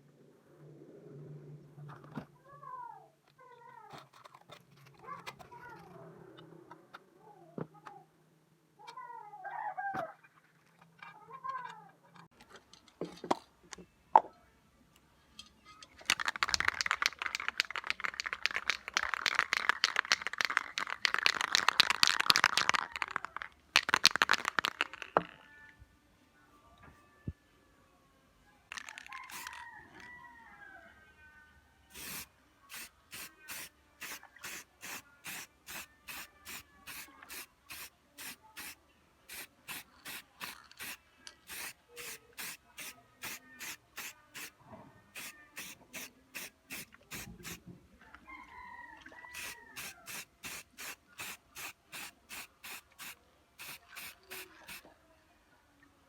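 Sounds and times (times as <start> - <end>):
spray can hissing bursts: 16.2 - 23.1, 28.8 - 29.6, 31.9 - 44.5, 45.2 - 47.6, 49.4 - 54.8.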